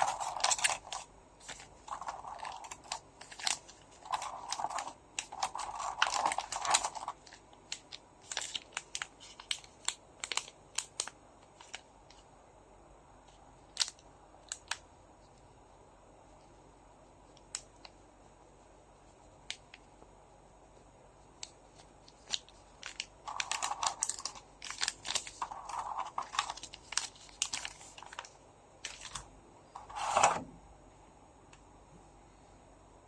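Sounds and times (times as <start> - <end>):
wrapper crinkling and tearing: 0.0 - 11.8, 21.4 - 29.3.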